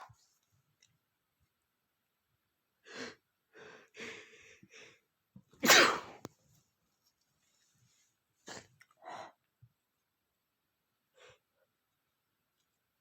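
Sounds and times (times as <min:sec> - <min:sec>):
person sneezing: 0:05.6 - 0:06.2.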